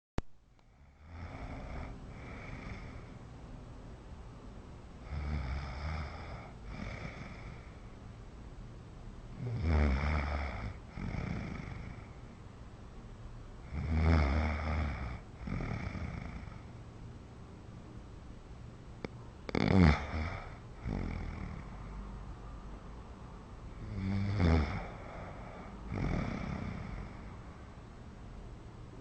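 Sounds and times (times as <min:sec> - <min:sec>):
woman snoring loudly: 0:00.8 - 0:03.1, 0:05.0 - 0:07.7, 0:09.4 - 0:12.1, 0:13.6 - 0:16.7, 0:19.5 - 0:21.7, 0:23.8 - 0:27.3.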